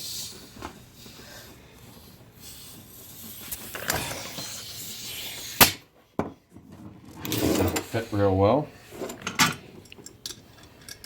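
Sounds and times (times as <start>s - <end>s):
compressed air hissing: 0.0s - 5.8s.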